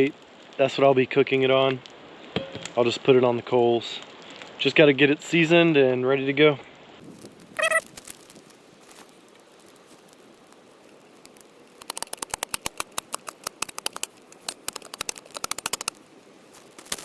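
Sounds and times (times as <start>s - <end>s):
seasoning grinder ratcheting clicks: 11.3s - 16.0s.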